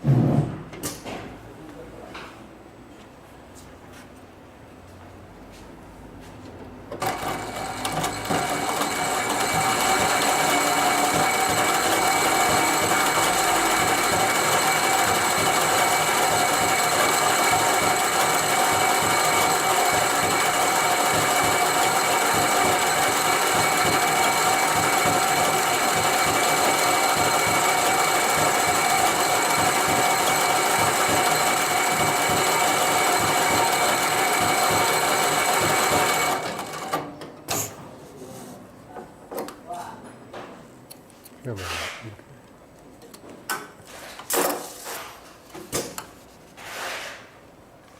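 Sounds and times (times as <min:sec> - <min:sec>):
sewing machine running: 0:07.0 - 0:37.1.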